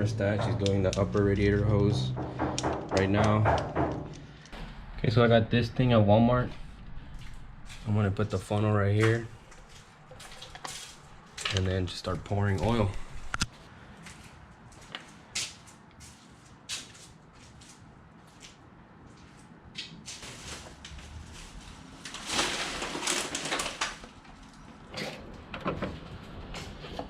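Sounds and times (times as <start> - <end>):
jug and funnel knocks: 0.0 - 4.4.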